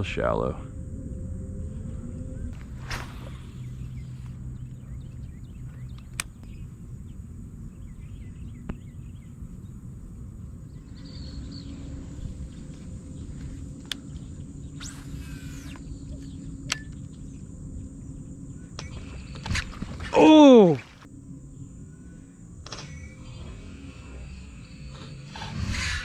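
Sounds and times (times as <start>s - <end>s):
steady low rumble: 0.0s - 20.1s, 20.9s - 26.0s
bird calling: 1.8s - 21.1s
sharp clicks: 5.9s - 6.6s.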